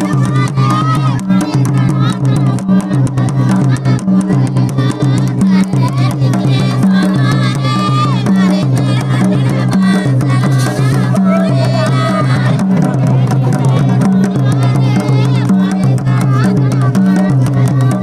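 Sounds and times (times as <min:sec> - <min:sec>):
music with drum beat and bass: 0:00.0 - 0:18.0.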